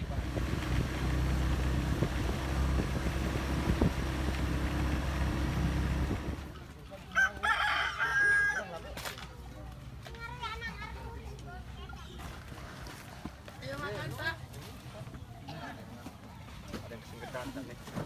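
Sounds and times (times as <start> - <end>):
vehicle engine running: 0.0 - 6.7
rooster crowing: 7.1 - 8.8.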